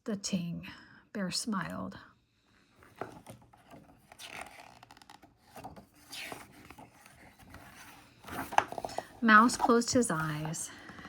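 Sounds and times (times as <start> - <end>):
book page being turned: 2.9 - 10.6.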